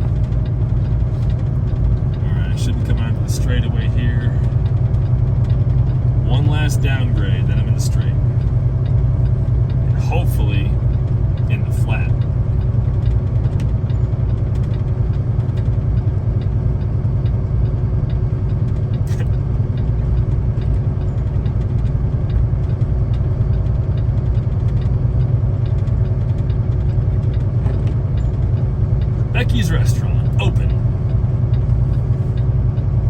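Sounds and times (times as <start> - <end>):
diesel engine droning: 0.0 - 33.0.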